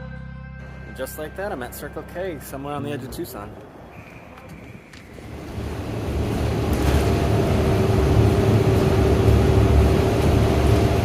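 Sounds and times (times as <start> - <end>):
large vehicle engine rumbling: 5.1 - 11.0.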